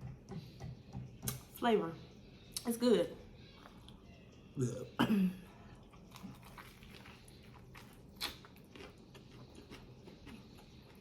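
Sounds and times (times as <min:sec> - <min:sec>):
chewing with wet mouth clicks: 0:05.8 - 0:11.0.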